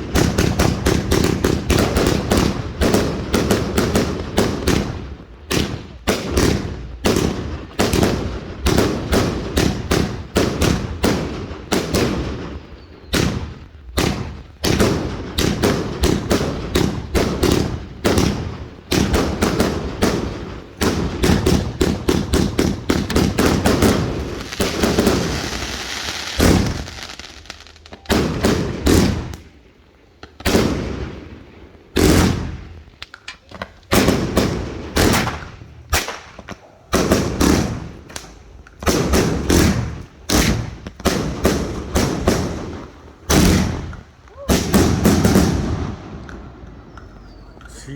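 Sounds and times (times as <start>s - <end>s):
firework bangs: 0.0s - 47.9s
hissing crackle: 23.0s - 28.1s.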